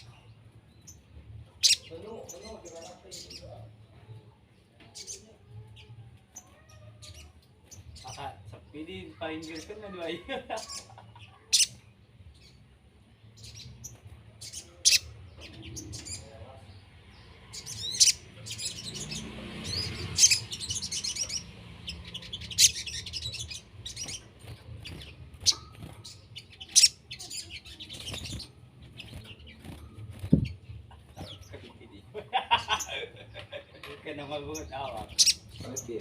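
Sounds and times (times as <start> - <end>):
small bird chirping: 0.0 - 4.2, 10.6 - 31.6, 34.6 - 36.0.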